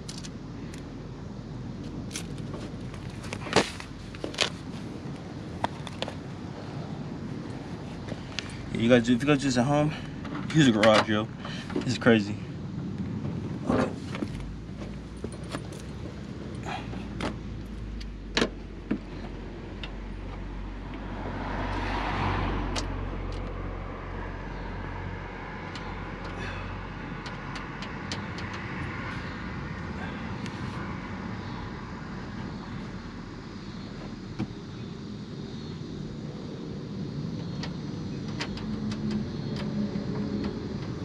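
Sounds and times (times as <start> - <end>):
vehicle passing by: 20.1 - 33.4
small ticks: 25.7 - 26.4.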